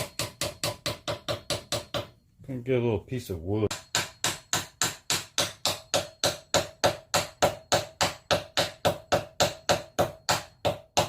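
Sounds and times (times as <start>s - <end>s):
hammer blows with metallic ring: 3.7s - 11.0s.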